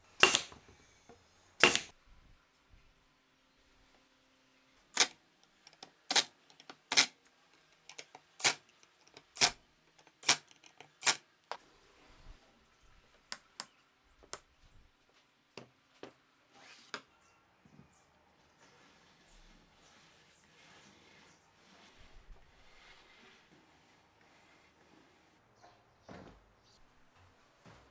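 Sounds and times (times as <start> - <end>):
hard objects clicking and knocking: 0.0 - 0.6, 1.6 - 1.9, 5.0 - 11.6.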